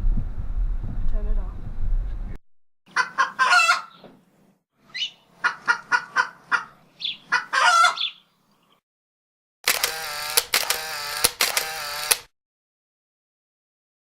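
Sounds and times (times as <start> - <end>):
grouse clucking: 5.4 - 8.1.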